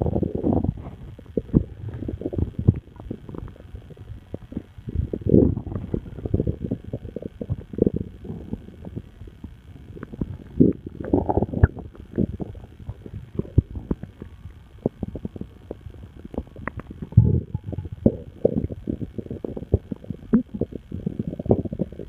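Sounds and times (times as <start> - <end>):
stomach gurgling and rumbling: 0.0 - 22.0.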